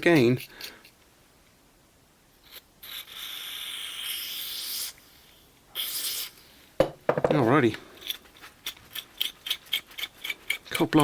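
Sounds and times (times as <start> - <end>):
aerosol spray hissing: 5.8 - 6.4.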